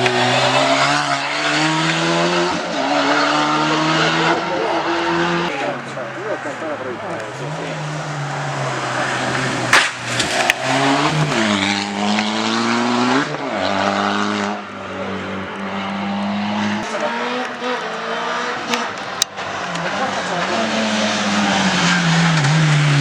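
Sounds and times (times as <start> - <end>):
rally car engine at high revs: 0.0 - 23.0
sharp cracks: 9.6 - 10.6.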